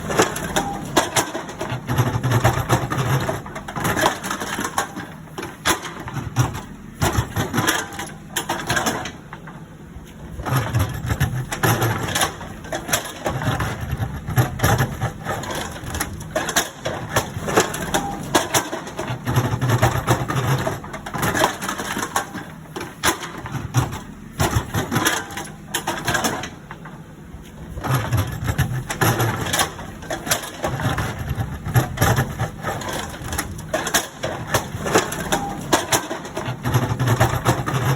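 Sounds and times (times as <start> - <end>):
excavator diesel engine labouring: 0.0 - 37.9.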